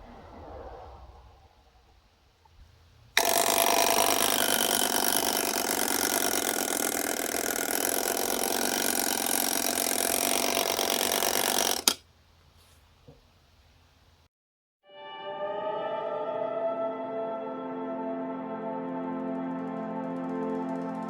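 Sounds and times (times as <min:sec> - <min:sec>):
alarm clock rattling buzz: 0:03.2 - 0:12.0.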